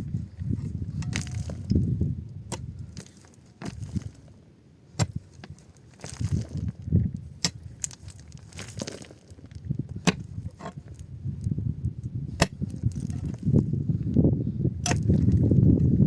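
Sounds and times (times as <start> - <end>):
low rumbling noise: 0.0 - 3.0.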